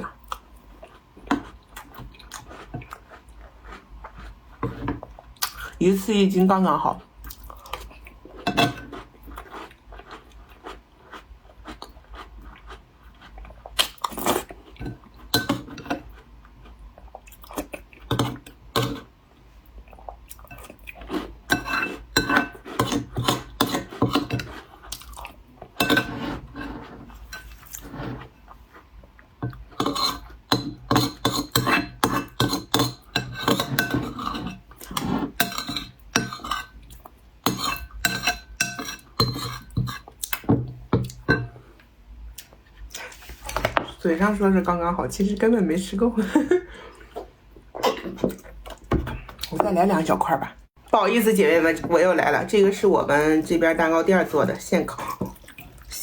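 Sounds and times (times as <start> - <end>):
chewing crunchy cookies: 0.0 - 5.8, 6.9 - 15.3.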